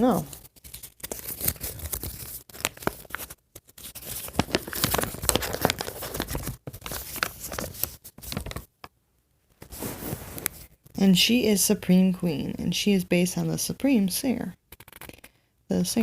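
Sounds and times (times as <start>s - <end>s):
paper rustling and crinkling: 0.0s - 8.7s, 9.6s - 10.9s.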